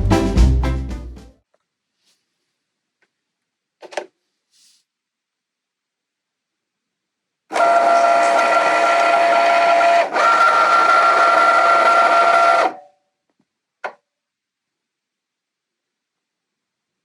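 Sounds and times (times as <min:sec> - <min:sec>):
small electric motor whining: 0:07.5 - 0:12.8.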